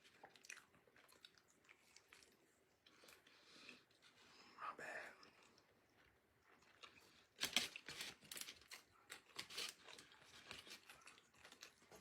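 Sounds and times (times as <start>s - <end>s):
food packaging crinkling: 6.7s - 12.0s.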